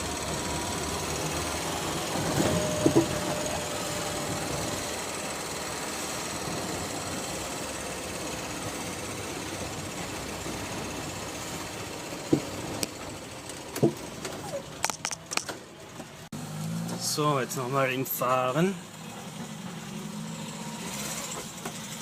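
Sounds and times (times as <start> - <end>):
engine running with ticking rattle: 0.0 - 22.0.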